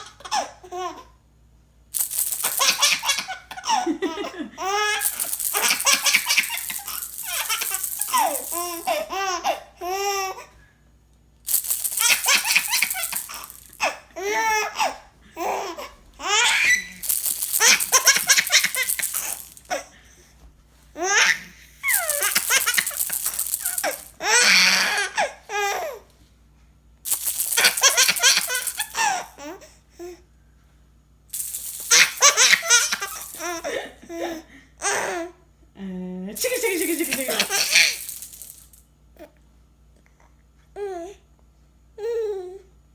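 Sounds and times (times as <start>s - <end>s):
baby laughing: 0.0s - 1.1s, 2.1s - 10.4s, 11.6s - 19.8s, 21.0s - 26.0s, 27.3s - 29.6s, 31.6s - 35.3s, 36.4s - 38.6s
rattle being shaken: 2.0s - 9.2s, 11.5s - 14.5s, 16.2s - 19.9s, 21.3s - 25.0s, 27.1s - 29.3s, 31.3s - 33.7s, 36.4s - 38.8s.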